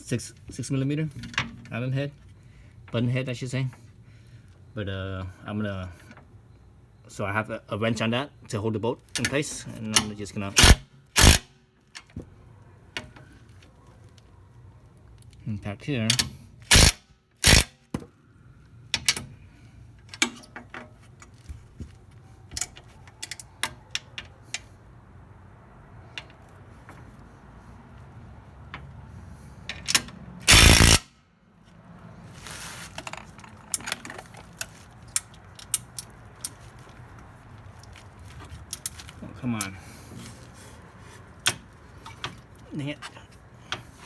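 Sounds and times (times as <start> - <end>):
impact driver bursts: 10.6 - 11.6, 16.7 - 17.8, 30.4 - 31.1.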